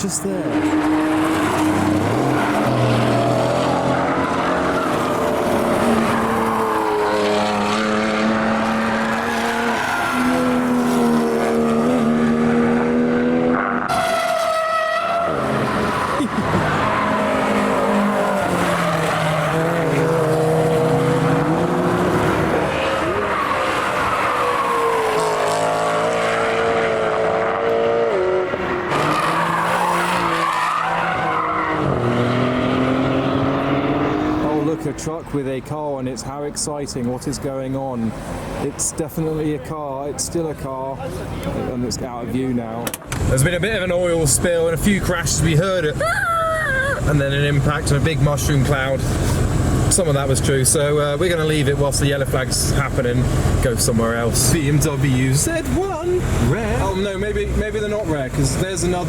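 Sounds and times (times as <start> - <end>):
car engines revving past: 0.0 - 35.3, 47.0 - 59.0
tyres squealing on wet track: 13.9 - 20.5, 22.6 - 25.5, 28.8 - 32.3.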